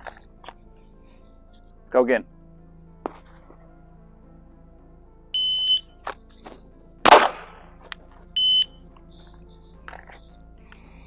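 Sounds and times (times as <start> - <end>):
shot timer beep: 5.4 - 5.9, 8.4 - 8.7
pistol shot with echo: 7.0 - 7.6.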